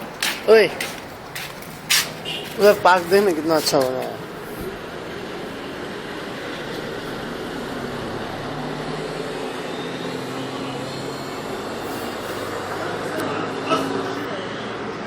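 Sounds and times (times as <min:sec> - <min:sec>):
road traffic noise: 0:00.0 - 0:15.0
engine hum: 0:04.2 - 0:15.0.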